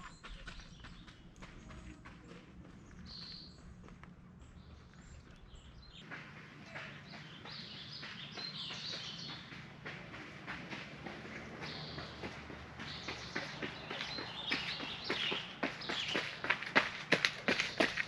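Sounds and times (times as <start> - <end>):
small birds chirping: 0.0 - 18.0
footfalls of runners: 5.9 - 18.0.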